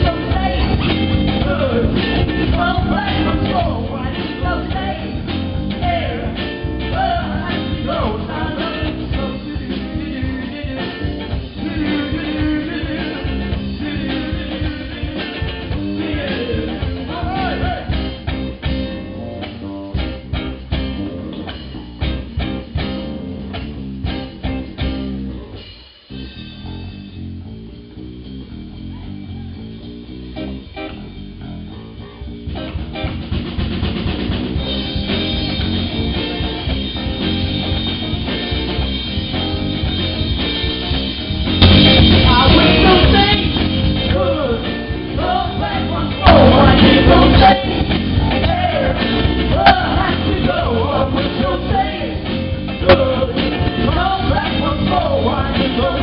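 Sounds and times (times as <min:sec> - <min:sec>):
person singing: 0:00.0 - 0:18.0, 0:41.7 - 0:56.0
bass guitar: 0:00.0 - 0:56.0
drum kit: 0:00.0 - 0:56.0
electric guitar: 0:00.0 - 0:56.0.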